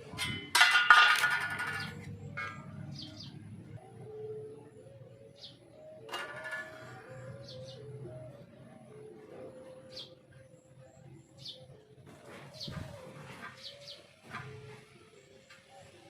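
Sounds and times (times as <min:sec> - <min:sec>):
low wavering tone: 0:01.4 - 0:12.0.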